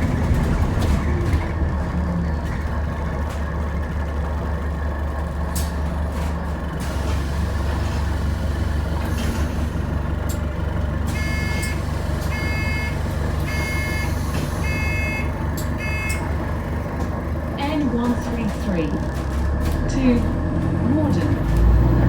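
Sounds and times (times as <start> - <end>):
bus drivetrain drone: 0.0 - 22.0
short electronic beeps: 11.2 - 16.2.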